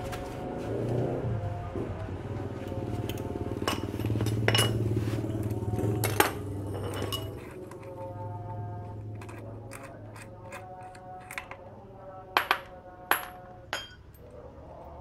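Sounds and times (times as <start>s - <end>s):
steady low hum: 0.0s - 15.0s
metal tools and parts clinking: 3.1s - 8.2s, 9.1s - 11.7s, 12.4s - 14.3s.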